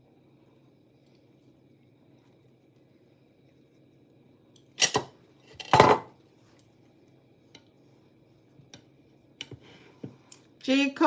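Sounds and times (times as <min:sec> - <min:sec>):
dishes and utensils clattering: 0:04.8 - 0:06.1.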